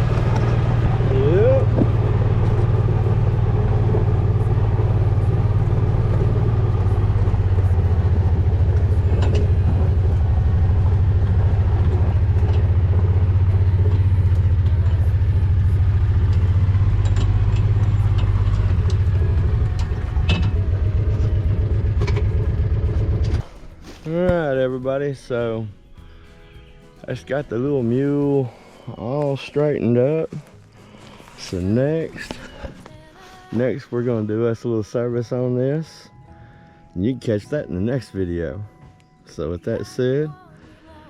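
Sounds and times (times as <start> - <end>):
utility vehicle engine idling: 0.0 - 25.6.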